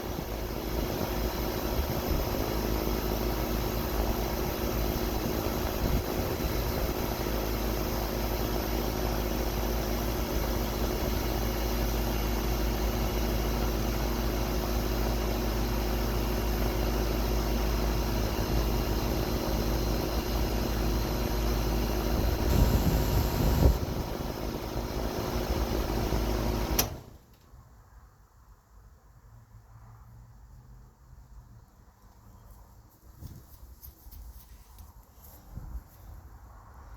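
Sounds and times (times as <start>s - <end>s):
air conditioner whirring: 0.0s - 27.5s.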